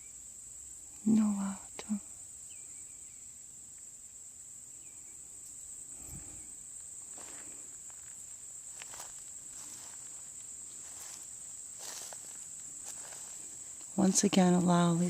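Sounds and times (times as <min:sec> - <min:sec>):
cricket chorus: 0:00.0 - 0:15.0
soft rustles: 0:07.1 - 0:14.8.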